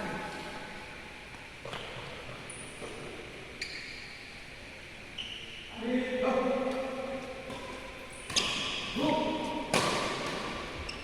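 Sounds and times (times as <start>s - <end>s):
shoe squeaks: 3.6s - 4.2s, 5.2s - 5.6s
racket hitting shuttlecock: 9.6s - 10.7s.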